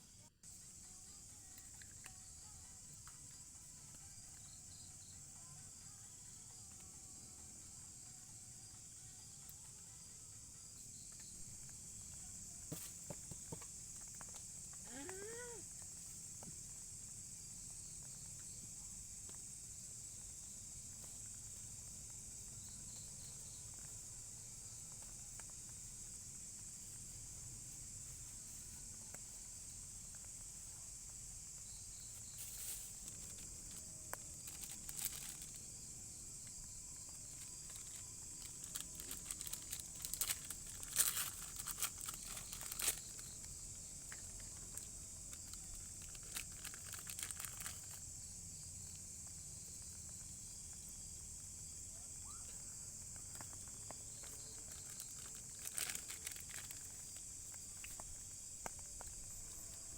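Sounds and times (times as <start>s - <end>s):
insects buzzing: 0.0s - 59.9s
crinkling and rustling: 32.1s - 35.8s, 37.0s - 48.1s, 53.3s - 59.9s.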